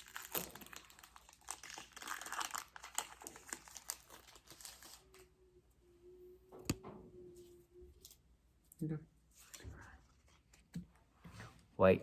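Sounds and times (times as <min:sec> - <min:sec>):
foil wrapper crinkling and tearing: 0:00.0 - 0:05.2.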